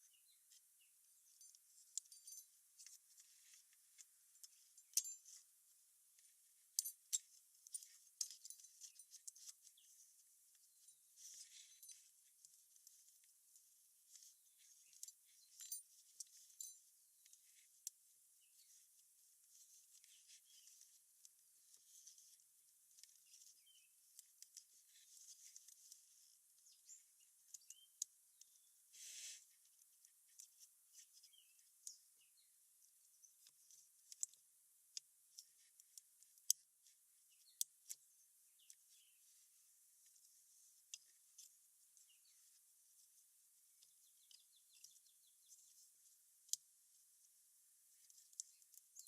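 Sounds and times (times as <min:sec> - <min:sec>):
faint clicks and rubbing: 0:00.3 - 0:49.0
ringing metal clinks: 0:01.4 - 0:02.6.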